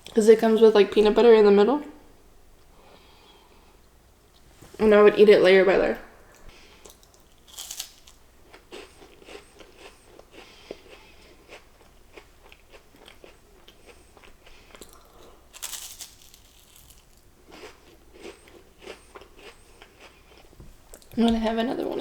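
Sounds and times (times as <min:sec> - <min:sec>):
crunching and chewing wafer: 0:06.8 - 0:20.5.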